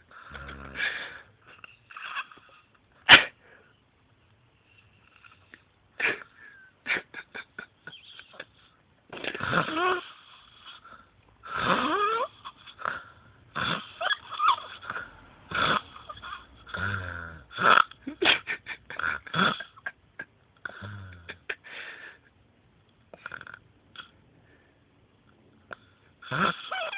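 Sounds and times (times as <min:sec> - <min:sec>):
man snoring loudly: 0:00.2 - 0:01.0, 0:09.4 - 0:10.0, 0:11.5 - 0:12.3, 0:13.6 - 0:14.0, 0:16.7 - 0:17.9, 0:20.7 - 0:21.4, 0:26.2 - 0:26.8
wheezing whistling breaths: 0:07.9 - 0:08.8.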